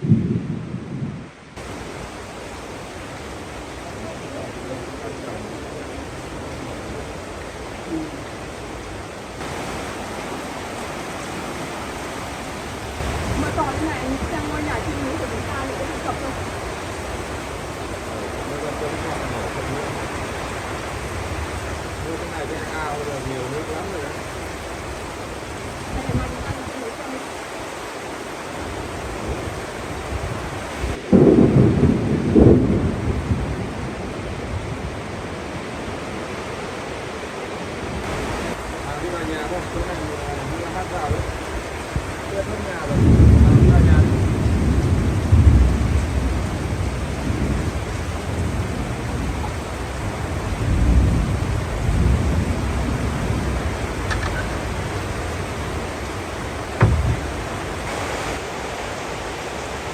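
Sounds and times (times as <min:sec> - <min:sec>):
thunder rumble: 0:00.0 - 0:22.8, 0:28.6 - 0:36.0, 0:37.8 - 0:58.6
heavy rain pouring: 0:00.0 - 0:59.9
low rumble: 0:56.8 - 0:57.9.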